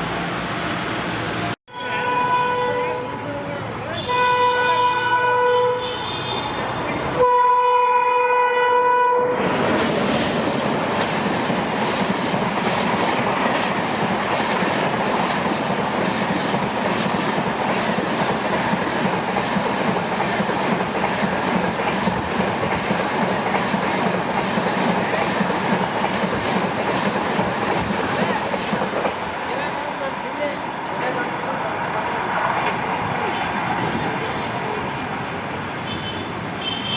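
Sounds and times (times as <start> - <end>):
locomotive horn blast: 1.7 - 3.2, 3.9 - 9.4
train wheels rumbling on rails: 9.3 - 36.9.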